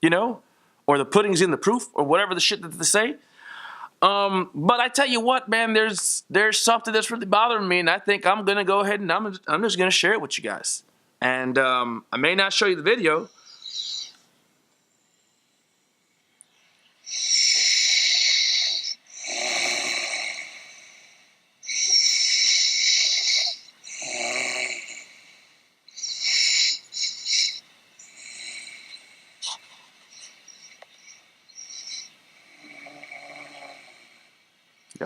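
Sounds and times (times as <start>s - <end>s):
quiet choppy breathing: 13.2s - 35.0s
woman snoring loudly: 17.1s - 29.4s, 30.1s - 34.4s.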